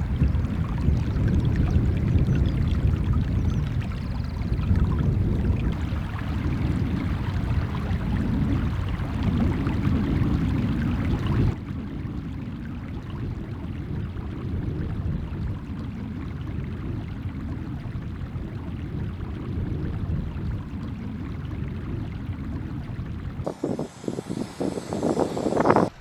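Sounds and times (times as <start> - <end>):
running water rushing: 0.0 - 14.3, 20.0 - 26.0.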